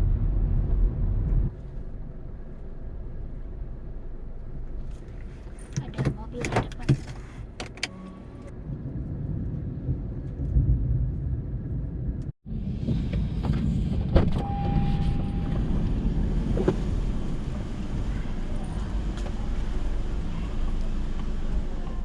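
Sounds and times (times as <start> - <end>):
engine and road rumble: 0.0 - 22.0
short steady beep: 14.4 - 15.6.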